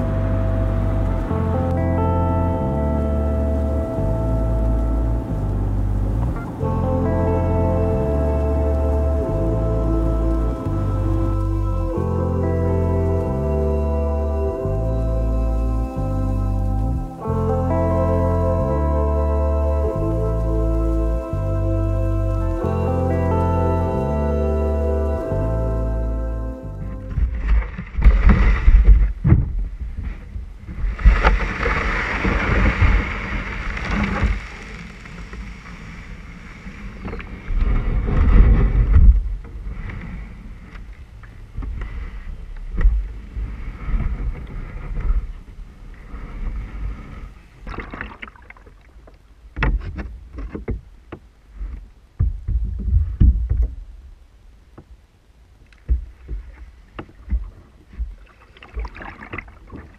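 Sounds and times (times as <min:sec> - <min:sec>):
wind rumbling on microphone: 0:00.0 - 0:59.9
water splashing around paddle: 0:26.9 - 0:55.0, 0:55.6 - 0:59.9
knocks: 0:52.2 - 0:53.8.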